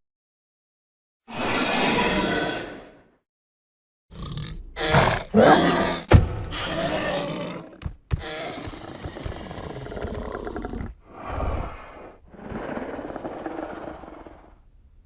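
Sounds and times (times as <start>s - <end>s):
dinosaur roar: 1.3s - 3.1s, 4.1s - 14.6s
sharp thud: 6.1s - 6.6s
low rumbling growl: 9.4s - 14.7s.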